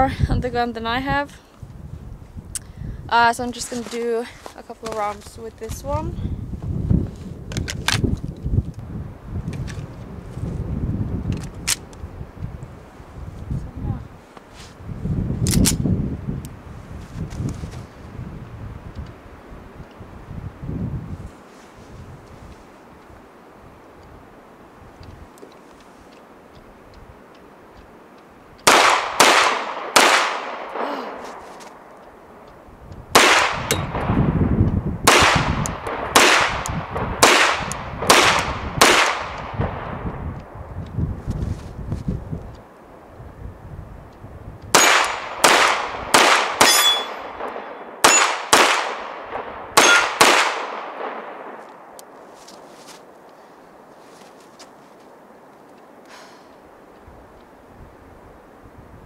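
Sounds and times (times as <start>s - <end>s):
pistol shots: 28.6s - 31.2s, 33.1s - 34.1s, 35.0s - 39.9s, 44.7s - 51.6s
faint metal clink: 46.7s - 47.2s.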